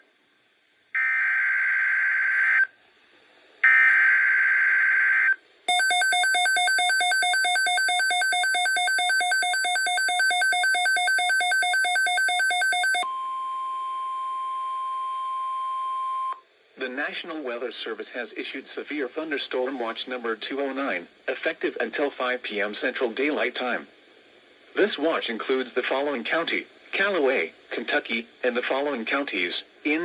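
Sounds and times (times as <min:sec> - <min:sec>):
rapidly pulsing electronic beep: 0:05.7 - 0:13.0
steady warning tone: 0:05.7 - 0:16.3.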